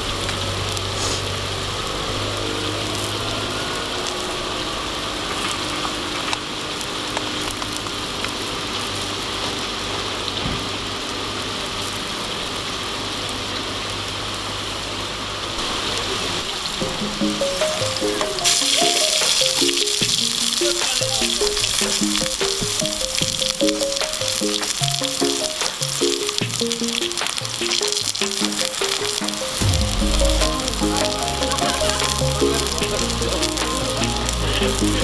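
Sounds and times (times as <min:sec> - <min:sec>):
food sizzling in a pan: 0:15.6 - 0:35.0
small pops and crackles: 0:16.8 - 0:29.6.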